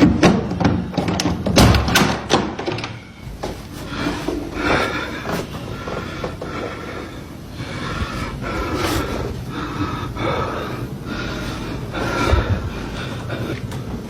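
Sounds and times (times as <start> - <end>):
person breathing heavily: 2.9 - 14.0.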